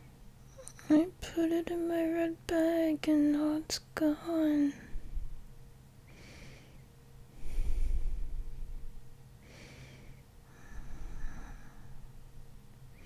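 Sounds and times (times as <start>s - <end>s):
woman breathing in sleep: 6.0s - 8.3s, 9.4s - 12.2s.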